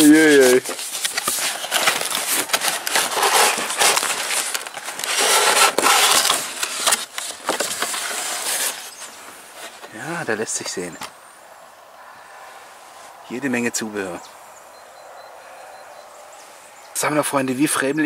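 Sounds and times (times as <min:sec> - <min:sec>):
packaging rustling and crinkling: 0:00.0 - 0:10.1.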